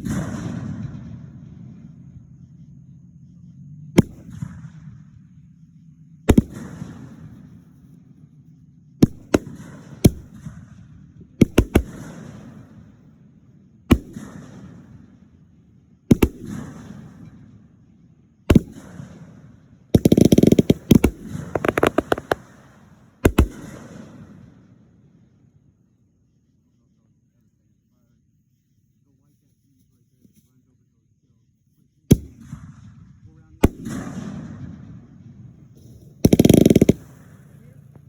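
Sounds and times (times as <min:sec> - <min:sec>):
fireworks bangs with rumbling echo: 0:00.0 - 0:02.7, 0:03.9 - 0:08.3, 0:08.9 - 0:25.5, 0:32.1 - 0:38.0
fireworks crackling: 0:20.0 - 0:24.3.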